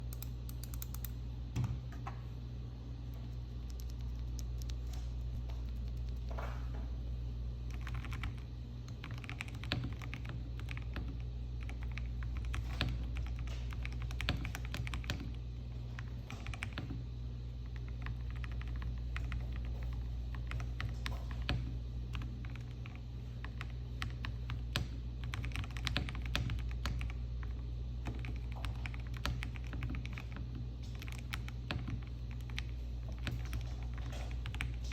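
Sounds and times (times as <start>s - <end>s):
mechanical keyboard typing: 0.0s - 1.2s, 7.7s - 15.3s, 16.0s - 16.9s, 17.8s - 19.7s, 22.1s - 27.2s, 28.0s - 34.8s
constant low hum: 0.0s - 34.9s.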